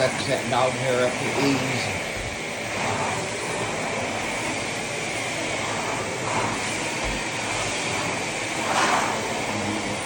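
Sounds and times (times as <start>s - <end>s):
vacuum cleaner running: 0.0s - 10.0s.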